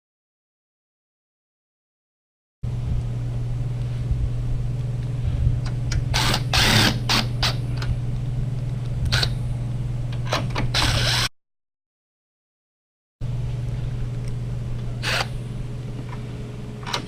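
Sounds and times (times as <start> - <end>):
steady low hum: 2.6 - 11.3, 13.2 - 17.0.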